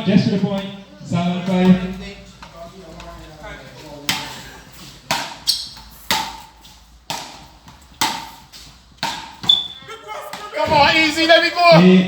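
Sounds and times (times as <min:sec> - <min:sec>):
wooden paddles striking ball: 0:04.0 - 0:04.4, 0:05.0 - 0:09.7, 0:10.3 - 0:11.2.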